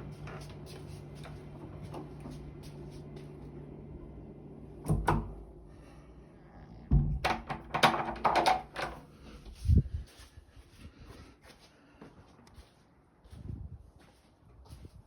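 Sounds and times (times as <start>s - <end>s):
steady low hum: 0.0s - 7.6s.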